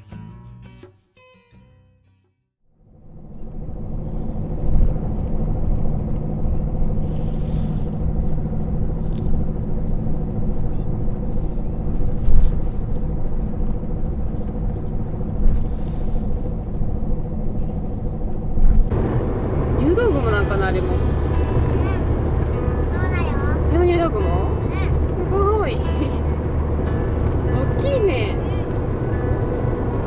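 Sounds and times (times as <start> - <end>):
road rumble: 2.8 - 30.0
car engine hum: 2.9 - 30.0.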